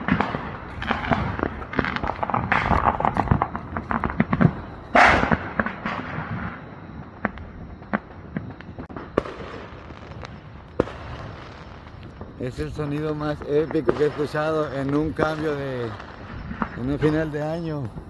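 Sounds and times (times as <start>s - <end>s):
fireworks and firecrackers banging: 0.0s - 18.0s.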